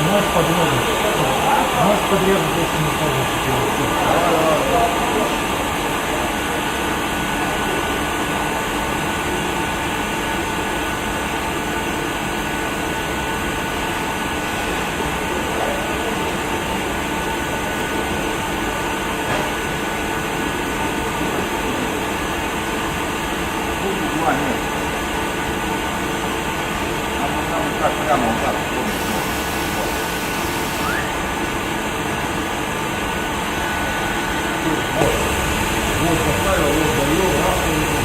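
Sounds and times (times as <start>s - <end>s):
electric motor and fan humming: 23.0s - 38.0s.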